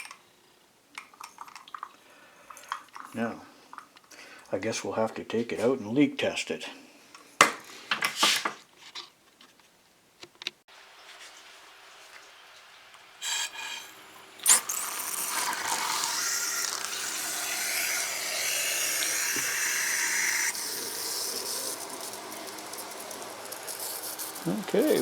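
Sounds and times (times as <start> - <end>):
hose spray hissing: 13.2 - 25.0.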